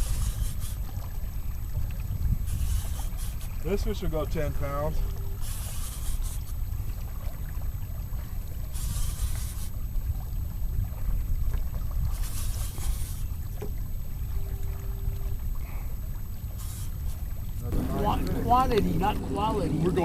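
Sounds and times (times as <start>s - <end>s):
water washing against hull: 0.0s - 20.0s
wind rumbling on microphone: 0.0s - 20.0s.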